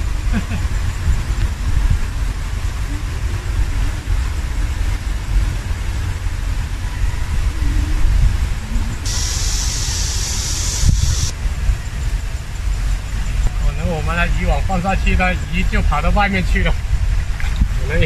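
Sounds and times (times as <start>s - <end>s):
wind buffeting the microphone: 0.0s - 18.0s
hiss: 9.0s - 11.3s.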